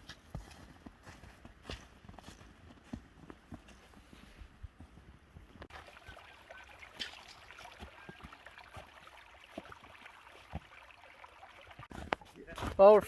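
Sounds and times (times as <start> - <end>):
footsteps on trail: 0.0 - 10.9, 11.8 - 13.0
brook babbling: 5.7 - 12.0.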